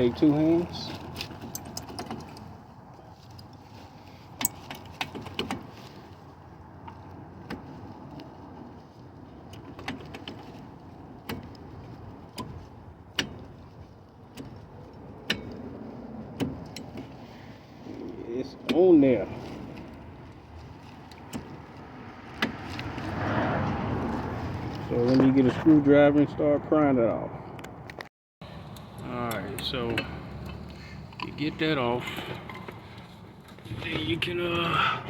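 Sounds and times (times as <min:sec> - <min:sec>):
metallic clicks and knocks: 0:01.0 - 0:02.6, 0:11.2 - 0:15.7, 0:16.3 - 0:17.2.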